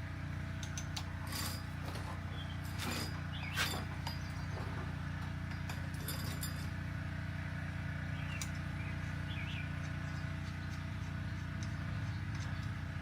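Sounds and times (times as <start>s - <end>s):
bird chirps: 3.3s - 4.6s, 8.1s - 12.8s.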